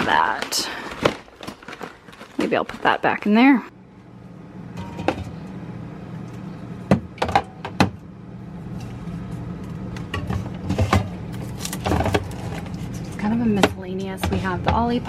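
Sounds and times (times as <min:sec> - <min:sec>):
items knocking and clinking on shelves: 0:00.0 - 0:03.4, 0:04.8 - 0:05.4, 0:06.9 - 0:08.0, 0:09.7 - 0:15.0
steady low hum: 0:01.5 - 0:15.0.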